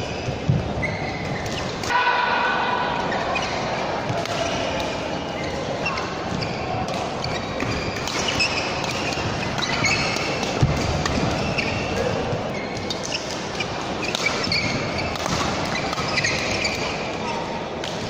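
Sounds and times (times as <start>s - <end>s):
shoes squeaking on court: 0.0s - 1.8s, 3.1s - 4.7s, 5.3s - 17.5s
crowd chatter: 0.0s - 14.1s
rackets hitting shuttlecock: 0.2s - 18.0s.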